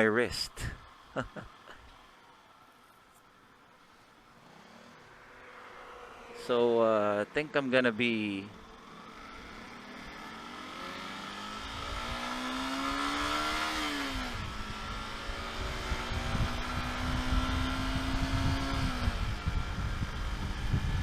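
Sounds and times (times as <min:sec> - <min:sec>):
motorcycle engine accelerating: 0:04.0 - 0:21.0
wind rumble on microphone: 0:13.2 - 0:21.0.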